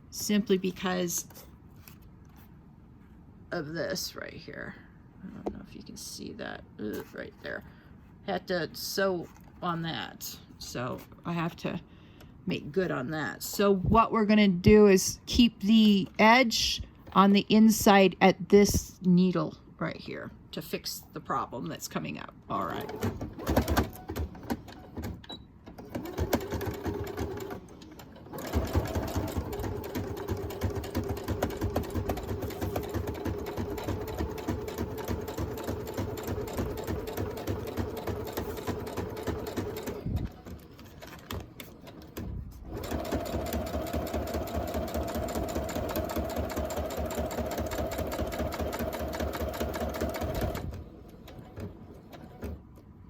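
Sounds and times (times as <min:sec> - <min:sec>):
sewing machine motor hum: 0:22.7 - 0:52.6.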